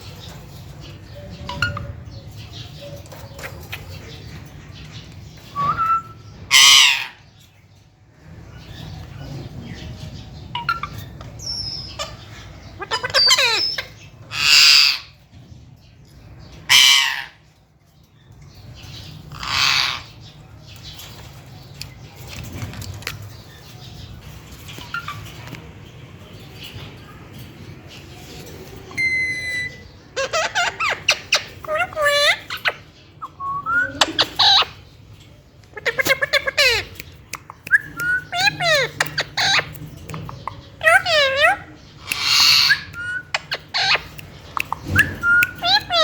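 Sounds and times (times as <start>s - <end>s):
parrot squawking: 6.5s - 7.2s, 12.8s - 15.1s, 16.7s - 17.4s, 19.3s - 20.2s, 29.0s - 34.9s, 35.8s - 46.0s.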